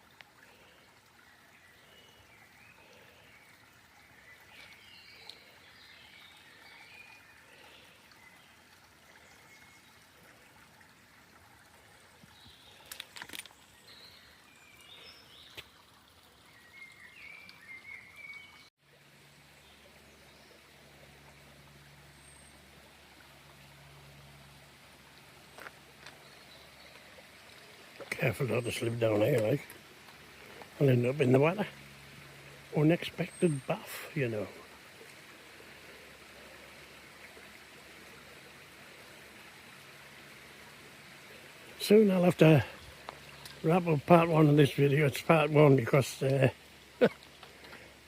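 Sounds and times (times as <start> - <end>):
faint trickling stream: 0.0 - 48.0
small birds chirping: 0.4 - 10.3, 25.4 - 37.0, 41.2 - 48.0.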